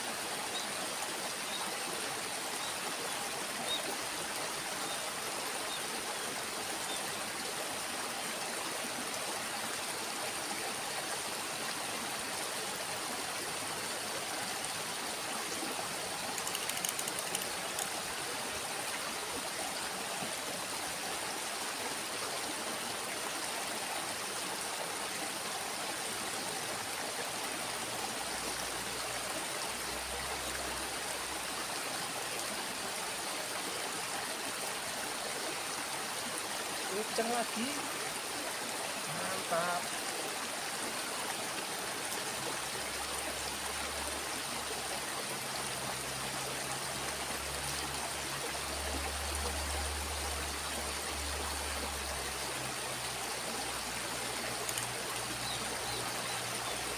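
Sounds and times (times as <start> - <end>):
stream flowing: 0.0 - 56.9
faint clicks: 16.2 - 18.0, 54.6 - 55.6.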